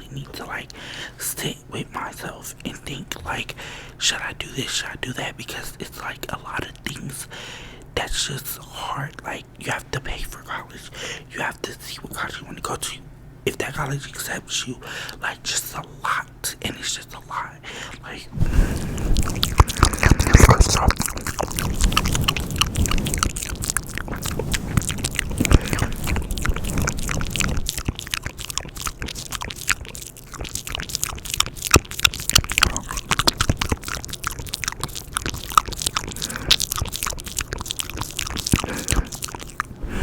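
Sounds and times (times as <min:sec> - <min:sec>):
wet tongue and lip clicks: 0:18.6 - 0:39.8.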